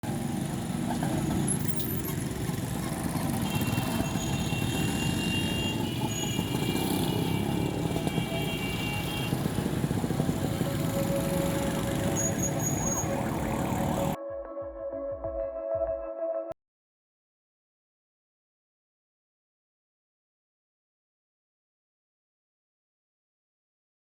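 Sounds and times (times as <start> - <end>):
dense traffic rumble: 0.0 - 14.2.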